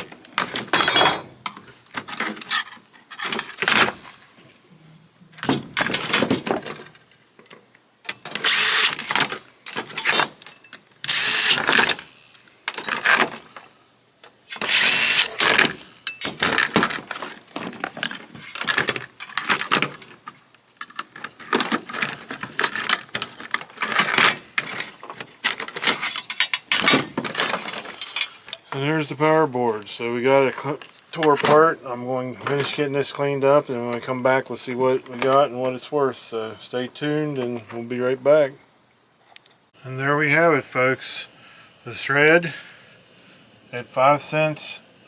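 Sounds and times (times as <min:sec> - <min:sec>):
metal parts clattering and scraping: 0:00.0 - 0:04.2, 0:05.4 - 0:13.7, 0:14.5 - 0:28.8.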